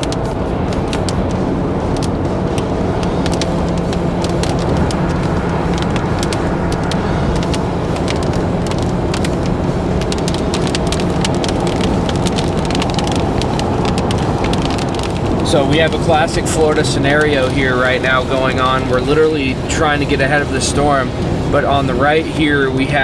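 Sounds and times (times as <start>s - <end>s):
sharp ticks on car body: 0.0s - 20.0s
road and engine drone: 0.0s - 23.0s.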